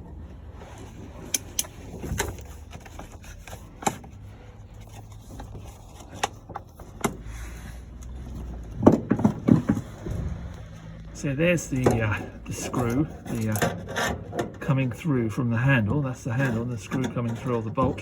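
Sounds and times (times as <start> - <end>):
steady low rumble: 7.3 - 13.3.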